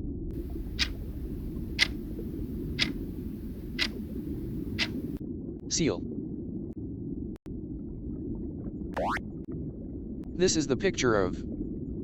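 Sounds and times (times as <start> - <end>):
steady low rumble: 0.0 - 10.4
clock ticking: 0.4 - 5.2.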